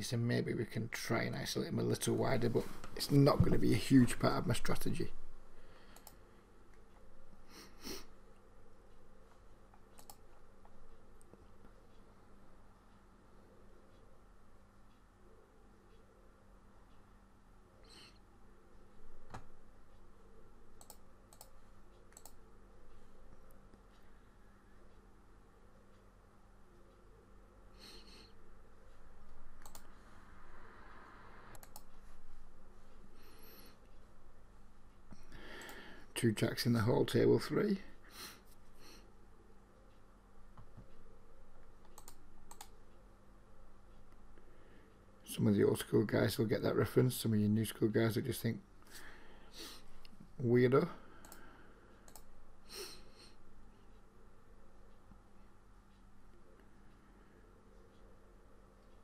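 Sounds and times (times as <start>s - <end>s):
quiet room hum: 0.0s - 59.0s
computer mouse clicks: 5.9s - 6.8s, 9.7s - 11.5s, 20.7s - 22.4s, 29.5s - 30.0s, 31.5s - 32.0s, 41.8s - 42.8s, 51.2s - 51.4s, 52.0s - 52.3s.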